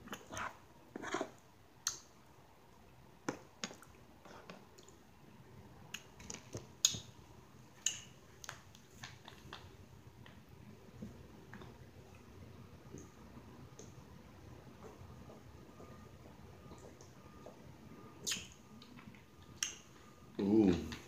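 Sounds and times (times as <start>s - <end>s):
wet mouth clicks and smacks: 1.8s - 2.1s, 5.9s - 7.1s, 7.8s - 9.6s, 18.2s - 19.9s.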